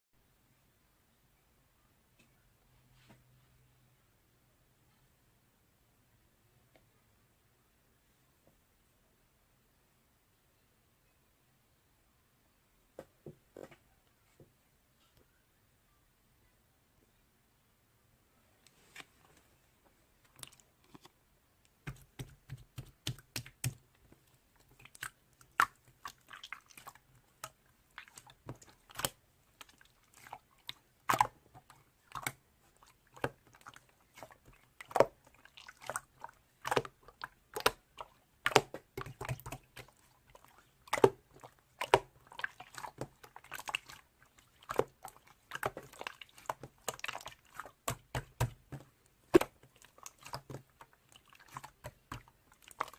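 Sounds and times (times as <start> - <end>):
slime squishing: 20.3 - 21.2, 21.8 - 52.9.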